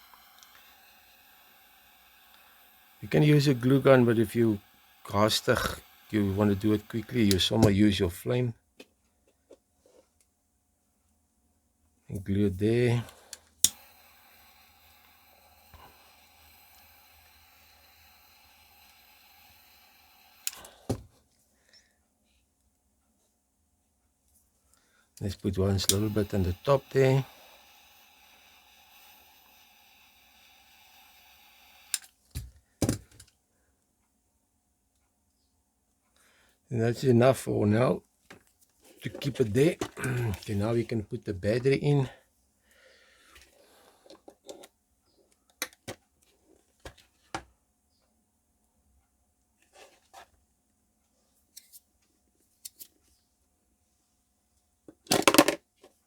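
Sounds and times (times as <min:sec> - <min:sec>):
faint steady hiss: 0:00.0 - 0:08.9, 0:11.0 - 0:23.5, 0:24.2 - 0:34.1, 0:36.1 - 0:44.5
sharp click: 0:13.6 - 0:20.8.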